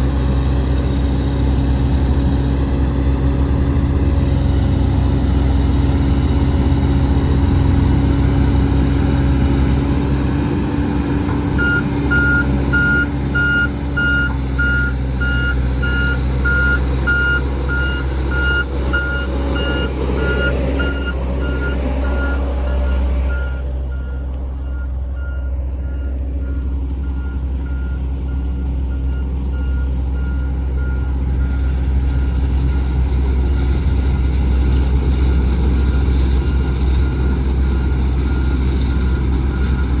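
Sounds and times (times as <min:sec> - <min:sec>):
diesel machinery droning: 0:00.0 - 0:40.0
backup alarm beeping: 0:11.6 - 0:22.4.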